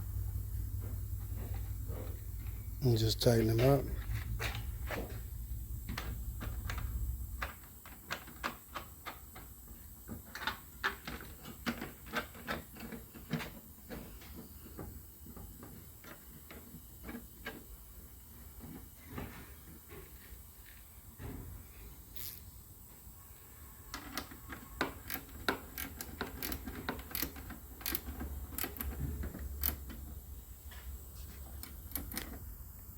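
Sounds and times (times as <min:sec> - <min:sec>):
low rumble: 0:00.0 - 0:02.9
ratchet wrench clicking: 0:22.2 - 0:22.4, 0:25.0 - 0:29.0, 0:29.6 - 0:29.9, 0:31.6 - 0:32.3.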